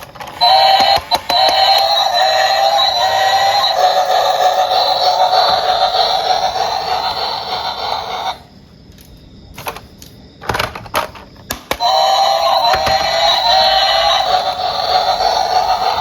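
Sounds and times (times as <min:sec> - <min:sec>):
tinny electronic toy tune: 0:00.4 - 0:08.4, 0:11.8 - 0:16.0.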